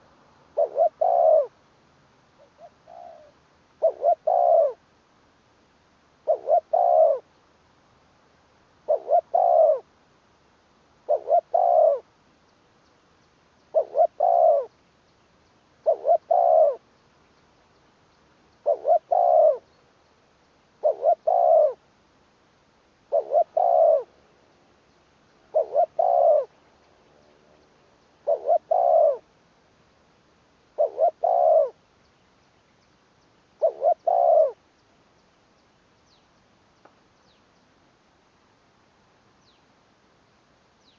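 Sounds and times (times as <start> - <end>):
dove cooing: 0.0 - 1.6, 2.4 - 4.8, 6.2 - 7.3, 8.9 - 9.9, 11.0 - 12.1, 13.7 - 14.7, 15.8 - 16.8, 18.6 - 19.7, 20.8 - 21.8, 23.1 - 24.2, 25.4 - 27.6, 28.2 - 29.3, 30.8 - 31.8, 33.6 - 34.6.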